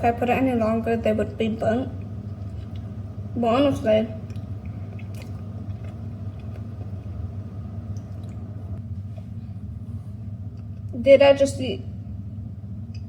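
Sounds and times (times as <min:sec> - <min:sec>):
steady low hum: 0:00.0 - 0:13.0
person chewing cookie: 0:02.2 - 0:03.1, 0:04.2 - 0:08.5.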